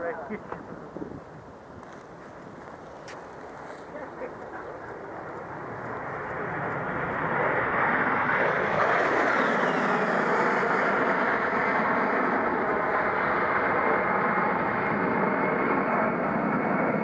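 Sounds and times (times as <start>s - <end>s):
jet engine roar: 0.0s - 17.0s
high jet whine dropping in pitch: 5.0s - 16.8s.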